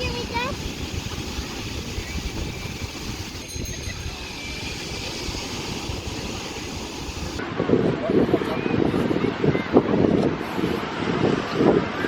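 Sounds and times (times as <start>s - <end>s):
ocean surf: 0.0s - 7.7s
wind buffeting microphone: 0.0s - 12.0s.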